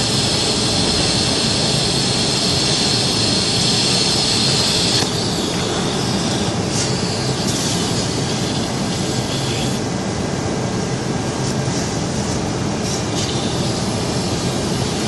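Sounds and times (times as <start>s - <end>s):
welding arc hissing: 0.0s - 9.8s, 12.8s - 15.0s.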